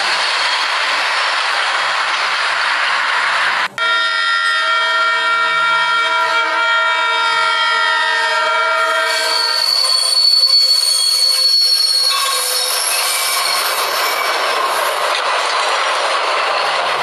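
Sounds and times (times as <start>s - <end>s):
train rushing past: 0.0s - 17.0s
wheels squealing on rails: 0.0s - 17.0s
train horn: 3.8s - 12.6s.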